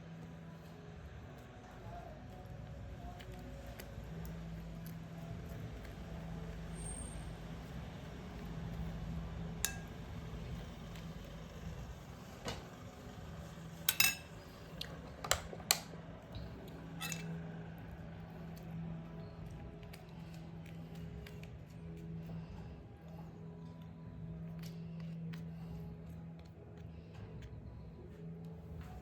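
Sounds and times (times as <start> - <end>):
steady low hum: 0.0 - 29.0
dishes and cutlery clinking: 9.6 - 10.0, 13.8 - 14.6, 16.9 - 17.4.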